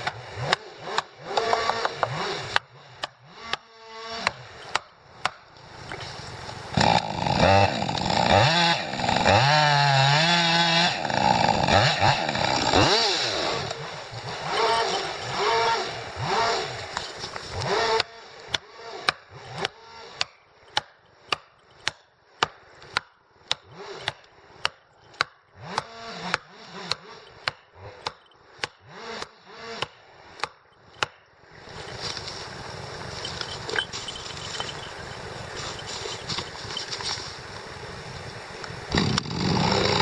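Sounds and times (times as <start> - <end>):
sharp evenly spaced knocks: 0.0 - 3.6, 19.1 - 31.3
chainsaw running and revving: 0.0 - 20.8, 23.5 - 24.7, 25.5 - 40.0.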